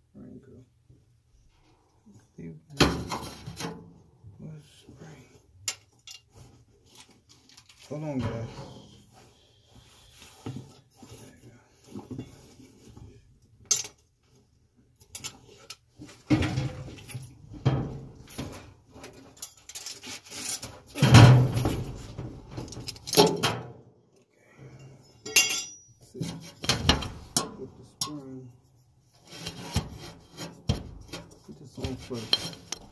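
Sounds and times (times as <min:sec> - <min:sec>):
metal tools clinking and clattering: 0:05.6 - 0:06.4, 0:16.6 - 0:23.7, 0:24.8 - 0:28.3, 0:31.2 - 0:32.9.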